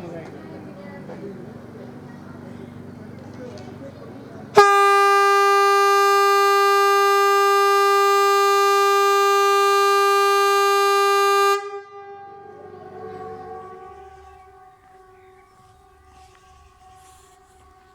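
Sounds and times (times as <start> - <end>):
fainter distant horns: 0.0 - 17.9
loud air horn blast: 4.6 - 15.5.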